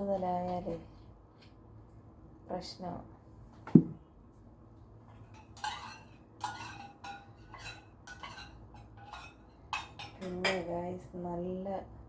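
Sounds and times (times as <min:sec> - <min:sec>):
sharp knock: 0:03.7 - 0:04.0
spoon clinking and scraping dish: 0:05.1 - 0:10.7.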